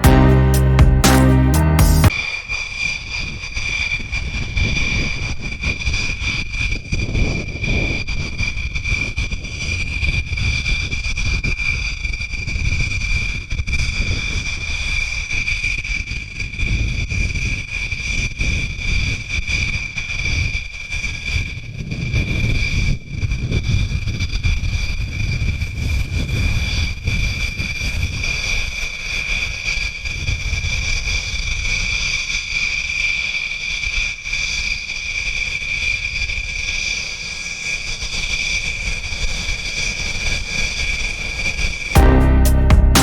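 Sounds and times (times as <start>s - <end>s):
music: 0.0s - 2.1s, 42.0s - 43.0s.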